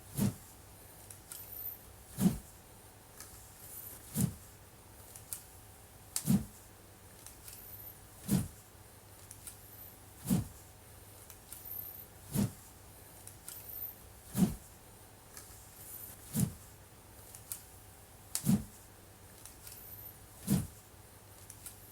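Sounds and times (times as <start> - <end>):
wooden sword whooshing: 0.1 - 0.4, 2.2 - 2.5, 4.0 - 4.4, 6.2 - 6.5, 8.2 - 8.5, 10.2 - 10.5, 12.3 - 12.6, 14.3 - 14.6, 16.3 - 16.6, 18.4 - 18.7, 20.4 - 20.8.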